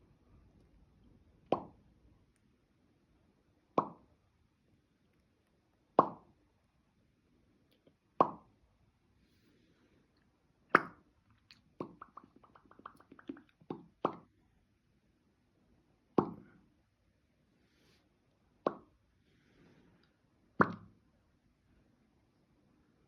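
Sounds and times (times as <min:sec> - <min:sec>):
person making popping sounds: 0:01.4 - 0:01.8, 0:03.8 - 0:04.1, 0:06.0 - 0:06.3, 0:08.2 - 0:08.5, 0:10.7 - 0:14.3, 0:16.2 - 0:16.6, 0:18.6 - 0:18.9, 0:20.6 - 0:21.0.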